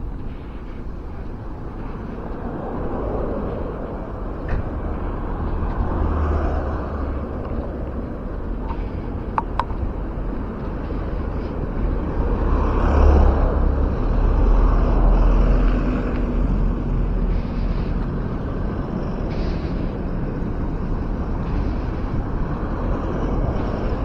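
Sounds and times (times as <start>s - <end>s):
vehicle passing: 0.0s - 24.0s
wind rumbling on microphone: 0.0s - 24.0s.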